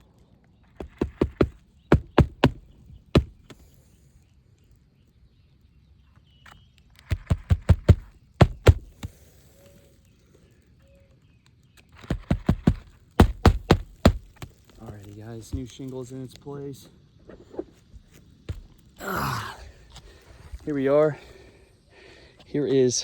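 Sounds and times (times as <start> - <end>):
hammer driving nails: 0.8 - 3.6, 7.0 - 9.2, 12.0 - 14.7.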